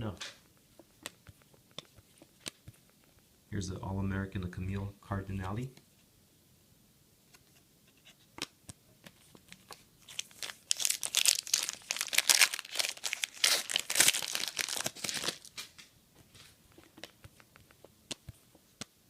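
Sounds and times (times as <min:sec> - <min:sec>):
wrapper crinkling and tearing: 0:10.0 - 0:15.8.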